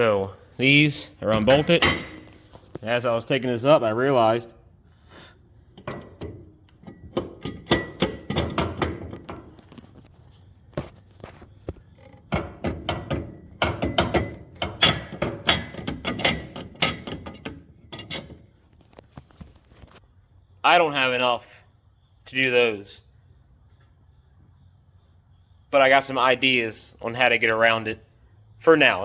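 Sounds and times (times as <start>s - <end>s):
metal parts knocking and clunking: 1.1s - 3.3s, 5.6s - 20.0s.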